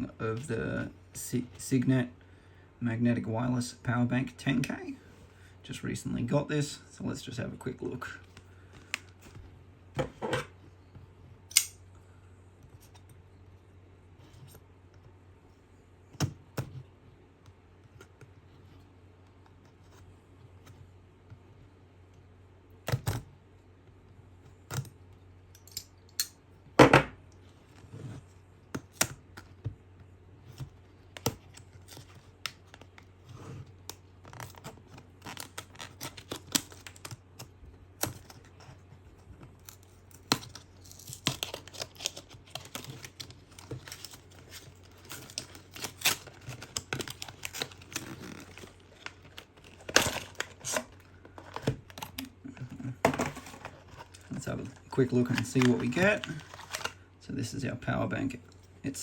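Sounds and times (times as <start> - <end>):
box packaging being handled: 27.6 - 57.0.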